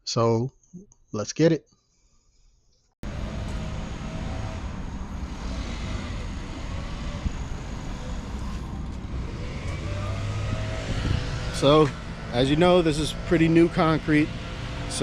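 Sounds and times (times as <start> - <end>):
pressure washer engine running: 3.0 - 15.0.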